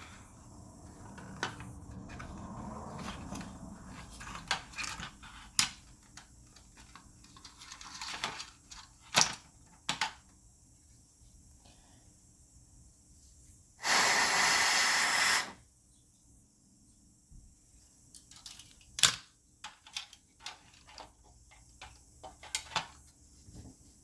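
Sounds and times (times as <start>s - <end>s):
steady hiss: 13.2s - 15.7s.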